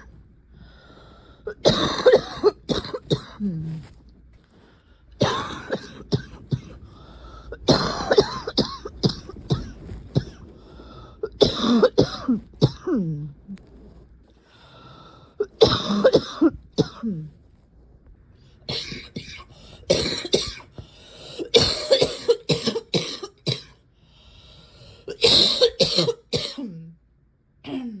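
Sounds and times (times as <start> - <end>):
person coughing: 1.5 - 3.9, 5.2 - 6.8, 7.6 - 10.4, 11.2 - 13.2, 15.4 - 17.3, 18.7 - 20.8, 21.4 - 23.8, 25.1 - 26.9.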